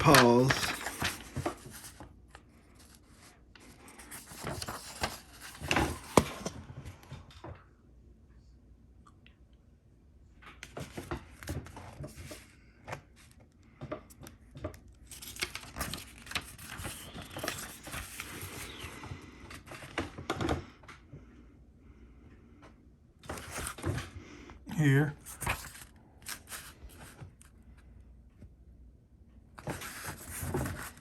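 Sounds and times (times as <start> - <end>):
paper rustling and crinkling: 0.0 - 6.7, 10.6 - 20.4, 23.2 - 27.5, 29.6 - 31.0.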